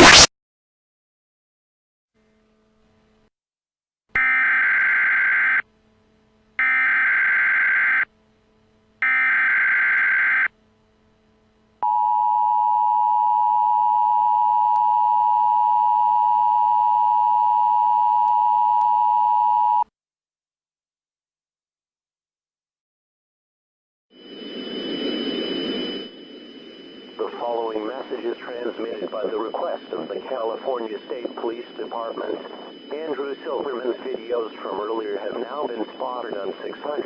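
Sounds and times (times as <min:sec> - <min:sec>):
screechy digital data tones: 0:04.2 - 0:05.6, 0:06.6 - 0:08.1, 0:09.0 - 0:10.5
two-tone alert signal: 0:04.2 - 0:05.6, 0:06.6 - 0:08.1, 0:09.0 - 0:10.5.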